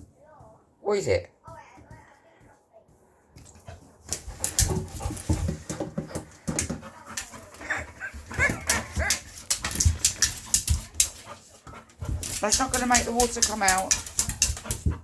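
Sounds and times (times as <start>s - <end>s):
dog clicks and scrapes: 3.4s - 15.0s
dog whining: 7.2s - 9.4s.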